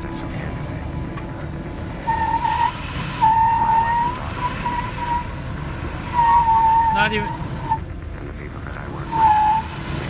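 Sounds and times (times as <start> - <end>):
low rumble of vehicle crawling: 0.0 - 10.0.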